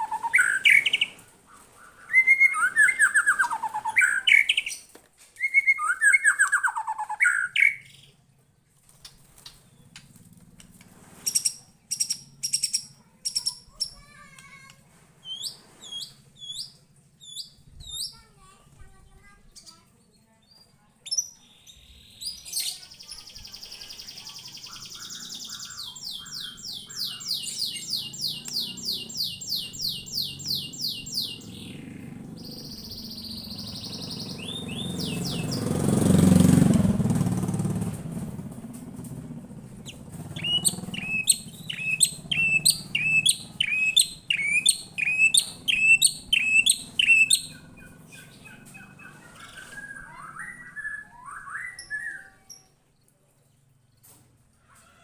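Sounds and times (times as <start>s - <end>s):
bird singing high notes: 39.8s - 52.5s.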